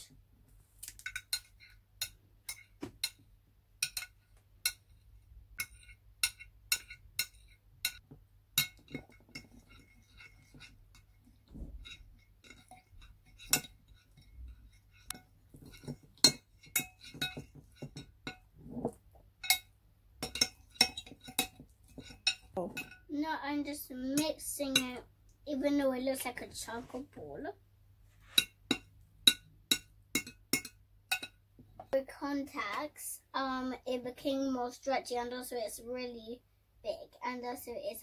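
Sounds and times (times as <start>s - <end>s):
utensil clinking against bowl: 11.8s - 18.5s, 19.4s - 23.0s.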